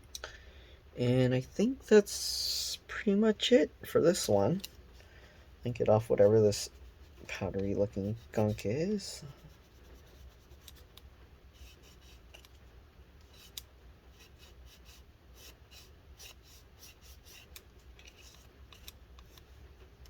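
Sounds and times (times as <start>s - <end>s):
faint low hum: 0.0s - 20.0s
small tool scratching and scraping: 6.0s - 12.6s, 13.2s - 19.6s.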